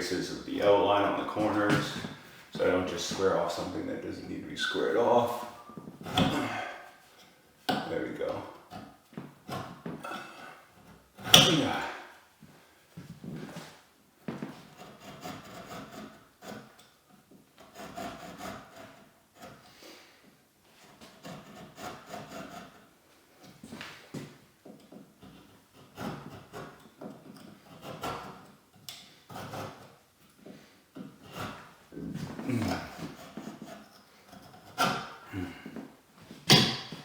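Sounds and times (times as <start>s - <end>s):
knife scraping wood: 0.0s - 12.1s, 14.4s - 17.0s, 17.6s - 19.8s, 20.8s - 23.9s, 25.1s - 35.7s, 36.4s - 37.0s.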